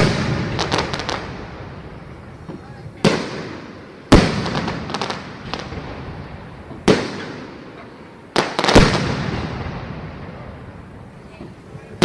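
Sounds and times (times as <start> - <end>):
fireworks bangs with echo: 0.0 - 12.0
crackling firework pops: 2.4 - 10.6.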